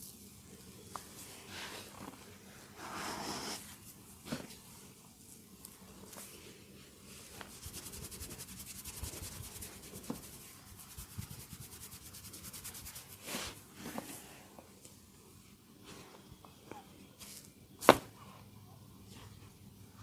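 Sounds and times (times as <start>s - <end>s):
hands rubbing skin: 7.4s - 13.2s.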